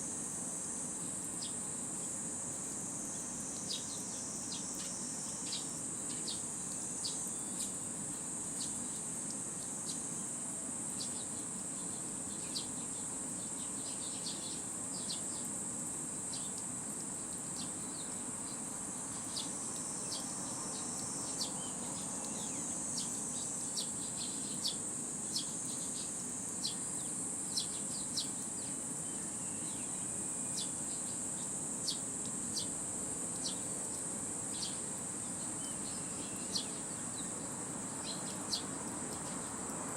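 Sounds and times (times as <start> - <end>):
insect drone: 0.0 - 39.9
sparrow chirps: 35.4 - 39.5.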